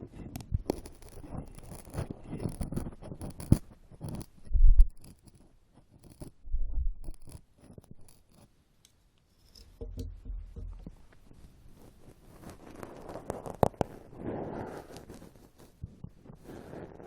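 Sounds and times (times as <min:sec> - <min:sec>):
ear pick scraping: 0:00.0 - 0:08.6, 0:09.3 - 0:17.0
microphone handling thumps: 0:09.8 - 0:11.1.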